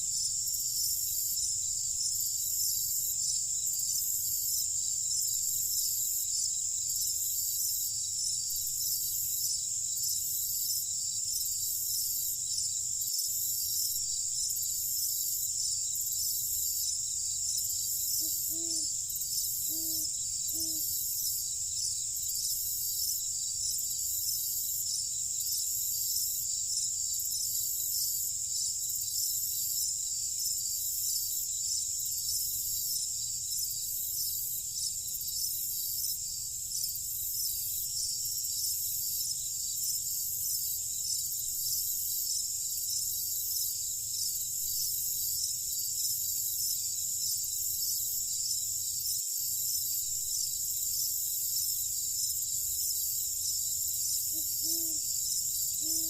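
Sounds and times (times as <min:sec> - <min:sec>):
crickets trilling: 0:00.0 - 0:56.0.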